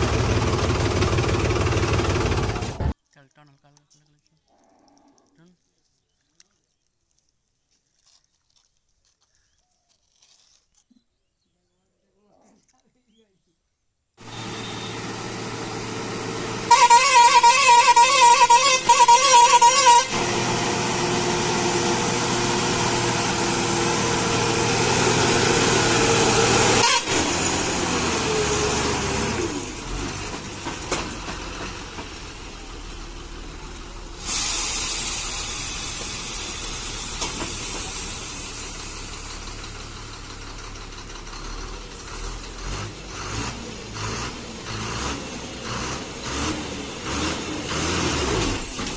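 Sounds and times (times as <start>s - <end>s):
warbling horn: 16.7s - 20.4s, 26.7s - 27.4s
steady hissing: 32.4s - 39.7s.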